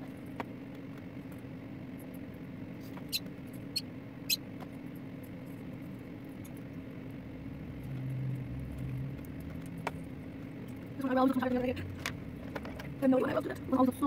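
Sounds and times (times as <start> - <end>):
steady low hum: 0.0 - 14.0
parrots chirping: 3.0 - 4.4.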